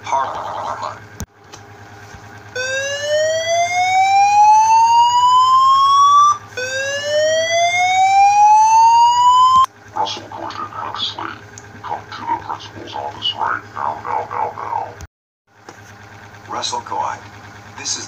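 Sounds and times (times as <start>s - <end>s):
fire alarm siren rising: 2.5s - 9.7s.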